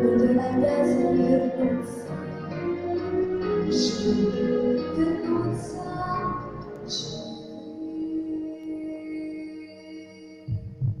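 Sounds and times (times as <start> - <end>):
dull low thumps: 10.5 - 11.0.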